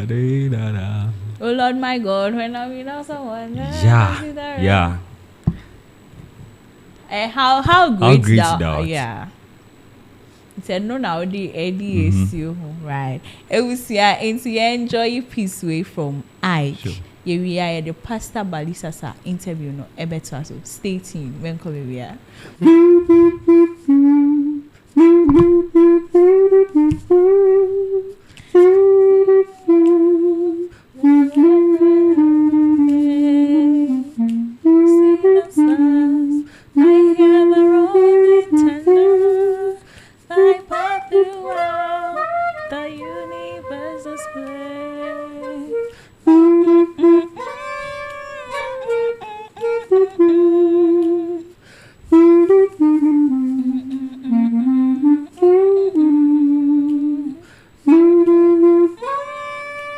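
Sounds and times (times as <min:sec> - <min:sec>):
clarinet playing slow melody: 0:03.6 - 0:05.0, 0:08.0 - 0:09.0, 0:12.0 - 0:12.5, 0:22.6 - 0:59.9.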